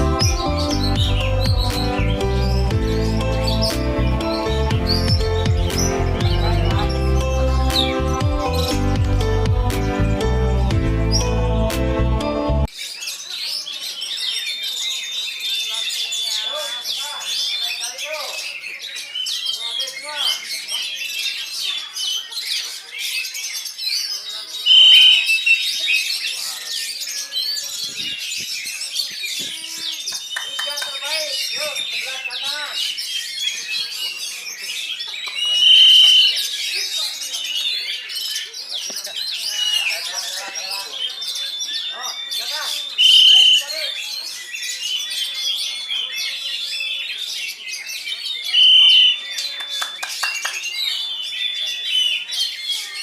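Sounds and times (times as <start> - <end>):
songbirds singing: 0.0 - 53.0
bird loud held whistle: 24.6 - 25.7, 35.5 - 36.4, 42.9 - 43.8, 48.5 - 49.3.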